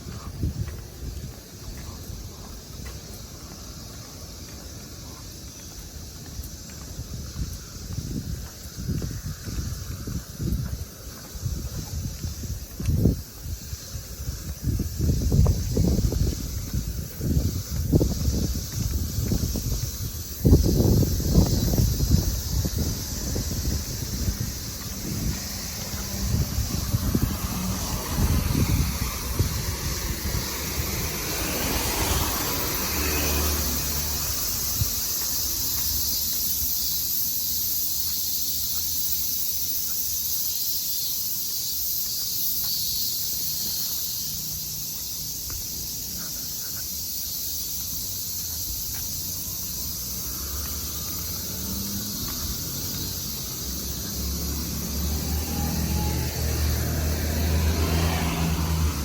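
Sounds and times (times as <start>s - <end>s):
strong wind gusting on microphone: 0.0s - 2.6s, 6.5s - 36.1s.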